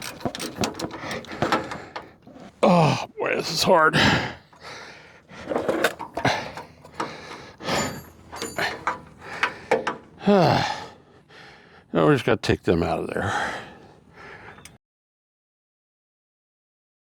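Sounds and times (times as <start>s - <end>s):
ratchet clanking on metal: 0.0s - 2.1s, 5.4s - 10.1s
person groaning with effort: 2.4s - 3.2s, 10.2s - 11.0s.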